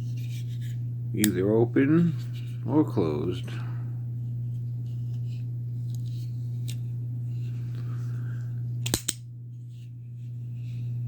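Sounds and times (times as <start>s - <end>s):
low hum: 0.0s - 11.0s
knife blade snapping open: 8.8s - 9.2s.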